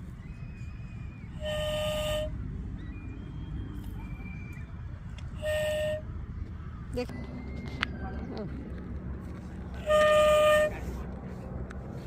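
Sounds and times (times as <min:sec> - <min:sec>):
low steady rumble: 0:00.0 - 0:12.0
vehicle horn honking: 0:01.4 - 0:02.3, 0:05.4 - 0:06.0, 0:09.8 - 0:10.9.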